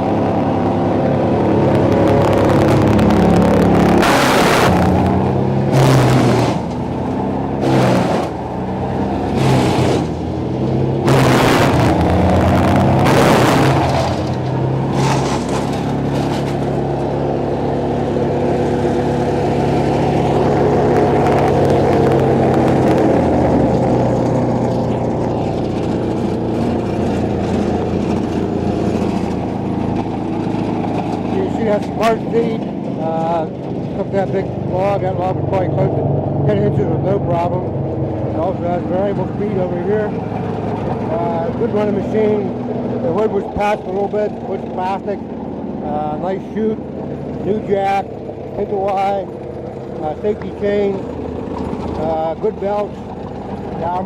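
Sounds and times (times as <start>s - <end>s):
wood chipper engine running: 0.0s - 54.0s
wood chipper crunching log: 1.9s - 34.9s.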